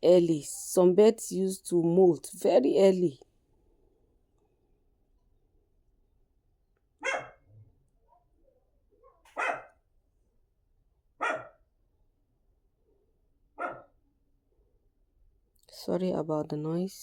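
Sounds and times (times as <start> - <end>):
dog barking: 7.0 - 7.5, 9.0 - 9.8, 11.2 - 11.6, 13.6 - 14.0.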